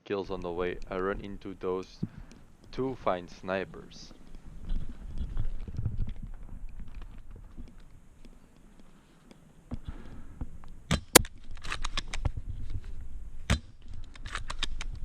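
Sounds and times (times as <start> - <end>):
small clicks: 4.1 - 12.4, 13.5 - 15.0.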